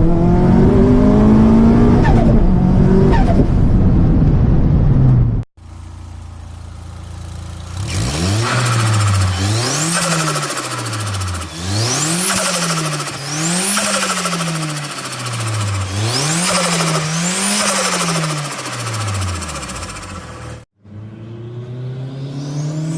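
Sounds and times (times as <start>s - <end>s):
car engine revving: 4.9s - 22.9s.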